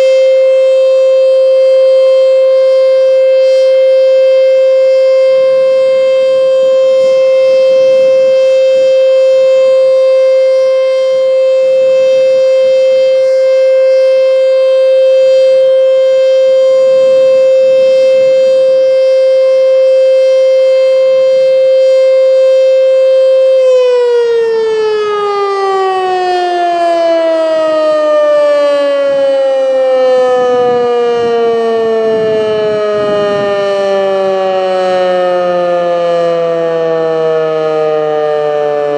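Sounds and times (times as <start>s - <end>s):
mechanical siren winding down: 0.0s - 38.9s.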